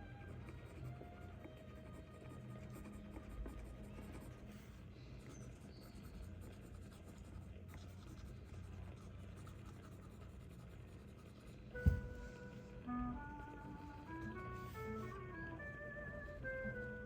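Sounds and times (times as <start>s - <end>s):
low steady room hum: 0.0s - 17.0s
pen scratching on paper: 0.4s - 12.1s.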